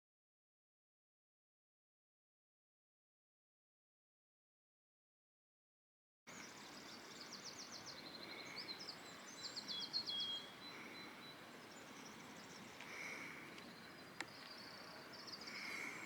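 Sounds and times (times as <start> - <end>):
faint steady hiss: 6.3 - 16.0
soft bird call: 6.3 - 16.0
songbirds trilling: 6.3 - 16.0.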